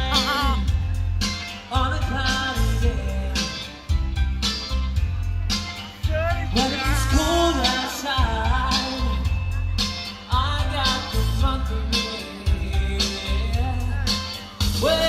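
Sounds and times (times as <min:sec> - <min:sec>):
soul song with singer and bass: 0:00.0 - 0:15.0.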